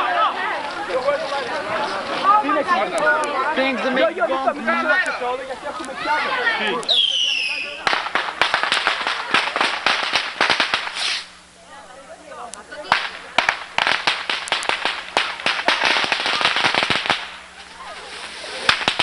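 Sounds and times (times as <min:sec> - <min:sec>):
firecrackers popping: 0:05.0 - 0:11.6, 0:12.5 - 0:19.0.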